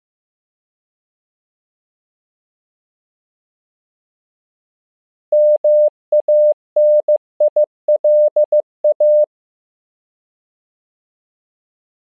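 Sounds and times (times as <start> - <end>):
morse code beeps: 5.4 - 9.3.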